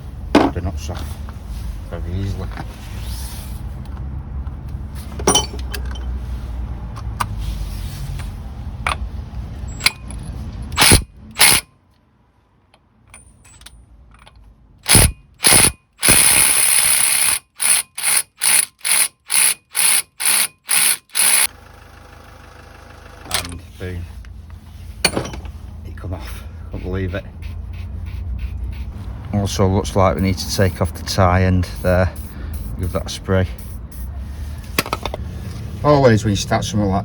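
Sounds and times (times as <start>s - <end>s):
ratchet wrench clicking: 9.7s - 11.7s, 14.3s - 21.5s.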